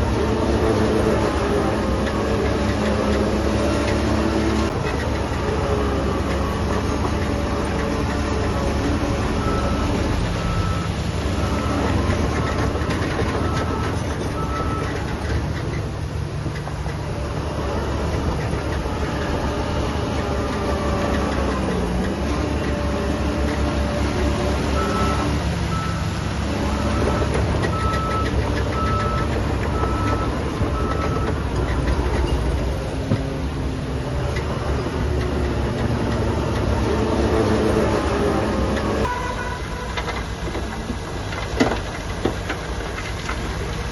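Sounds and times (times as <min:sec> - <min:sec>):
diesel engine running: 0:00.0 - 0:43.9
reversing alarm beeping: 0:09.3 - 0:15.0, 0:24.8 - 0:26.1, 0:26.7 - 0:31.4.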